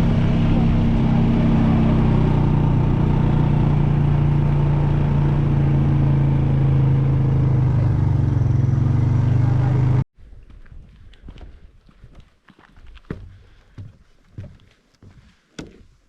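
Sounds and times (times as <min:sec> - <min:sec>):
quad engine running: 0:00.0 - 0:10.0.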